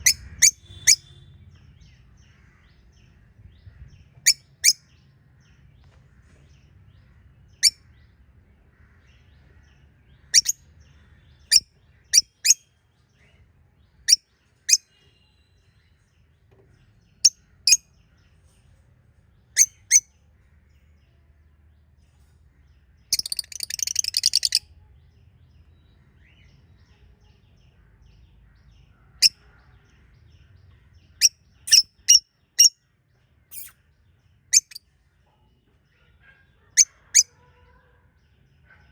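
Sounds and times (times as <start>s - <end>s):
budgerigars chirping: 0.0s - 1.2s, 31.7s - 32.7s
budgerigar scratchy chatter: 31.7s - 32.1s, 33.5s - 33.7s.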